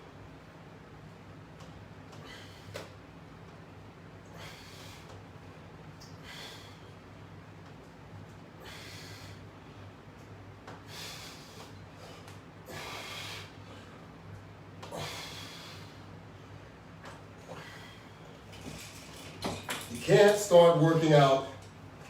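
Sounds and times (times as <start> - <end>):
steady low hum: 0.0 - 22.0
person breathing: 6.2 - 7.0, 8.6 - 9.9, 10.9 - 14.0, 14.9 - 16.1, 17.5 - 18.2.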